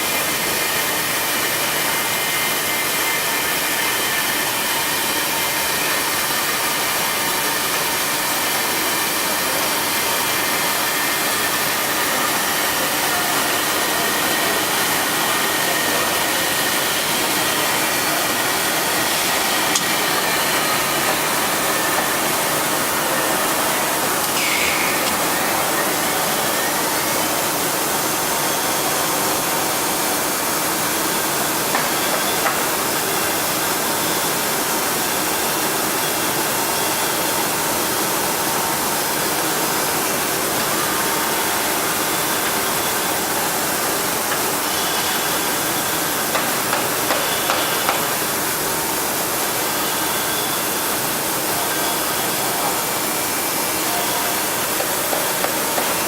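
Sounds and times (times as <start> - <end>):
cnc router running: 0.0 - 56.0.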